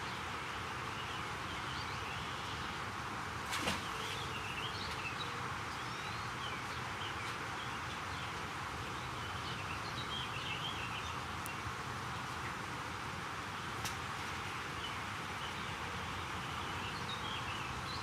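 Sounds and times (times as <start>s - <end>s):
outdoor ambience hiss: 0.0s - 18.0s
small birds chirping: 3.6s - 12.6s, 14.4s - 18.0s.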